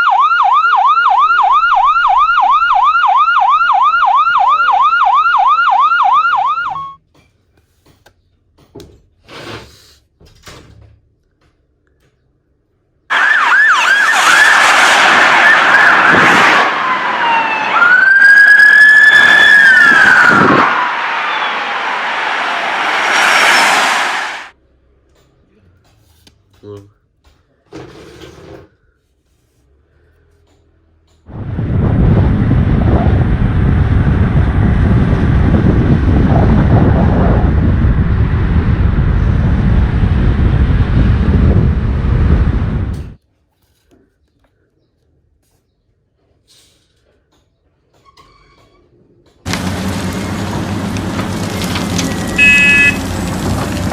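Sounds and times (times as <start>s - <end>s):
emergency vehicle siren: 0.0s - 7.0s, 13.1s - 24.6s, 49.5s - 53.9s
low rumble: 31.3s - 43.2s
wind buffeting microphone: 31.3s - 43.2s.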